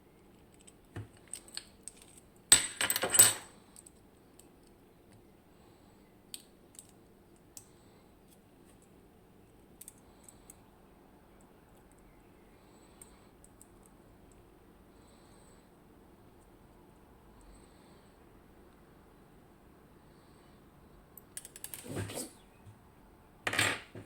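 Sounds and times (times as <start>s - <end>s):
metallic rattling of dropping pieces: 2.5s - 3.5s.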